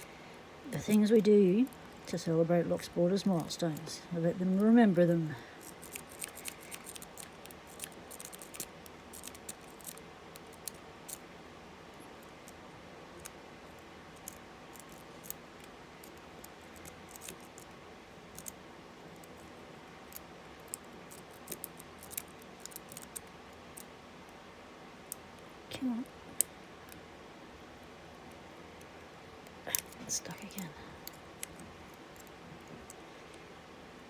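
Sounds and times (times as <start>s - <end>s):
lock pick clicking and scratching: 5.6s - 11.2s, 14.1s - 17.7s, 18.3s - 19.5s.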